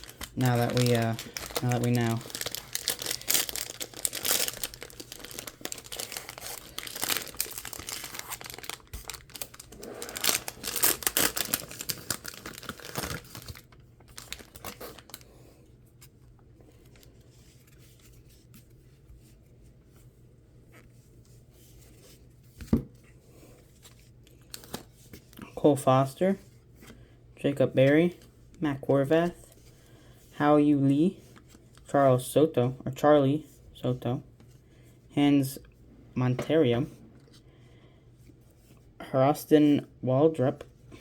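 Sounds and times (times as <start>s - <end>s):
wrapper tearing and crinkling: 0.0s - 15.2s.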